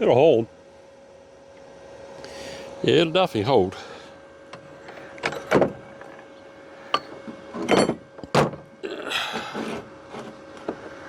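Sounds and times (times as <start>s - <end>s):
faint steady hum: 0.0s - 11.0s
metal knocking and scraping: 6.9s - 8.6s.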